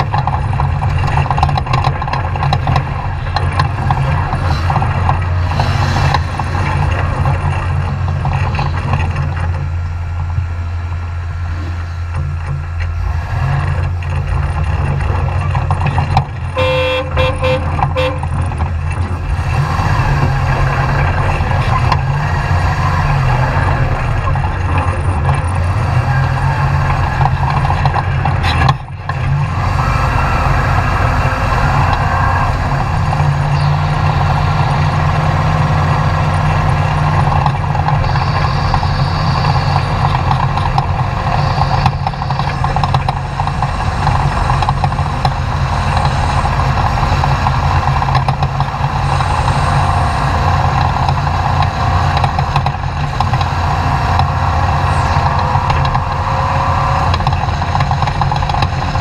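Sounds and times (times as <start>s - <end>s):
truck engine running hard: 0.0s - 59.0s
horn sounding: 16.5s - 18.5s, 37.9s - 42.8s.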